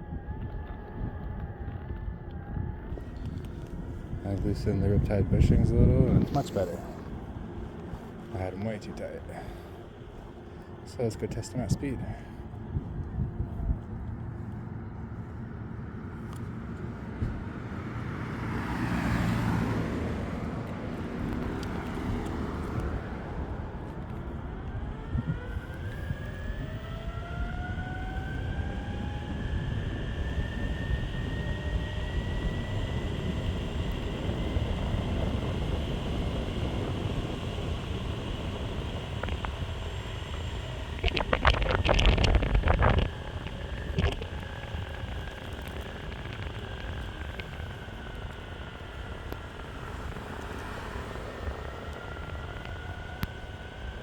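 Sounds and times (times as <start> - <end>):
skateboard wheels rumbling: 0.0 - 10.9, 12.3 - 54.0
electric motor whine: 0.0 - 54.0
loud rough noise: 38.9 - 50.3.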